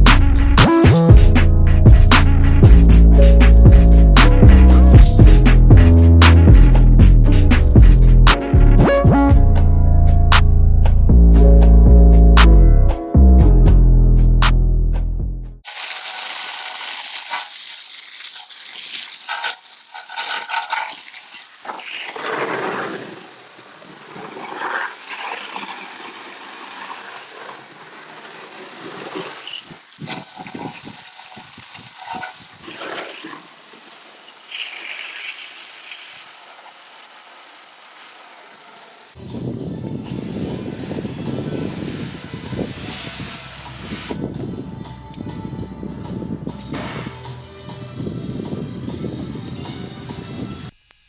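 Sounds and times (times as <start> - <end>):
water spraying from a hose: 15.6 - 44.2, 46.6 - 50.8.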